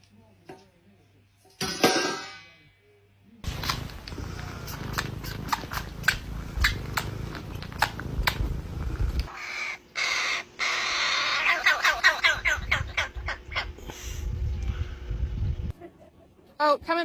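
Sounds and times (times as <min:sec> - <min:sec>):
hiss: 0:03.5 - 0:09.3
low rumble: 0:03.5 - 0:09.3.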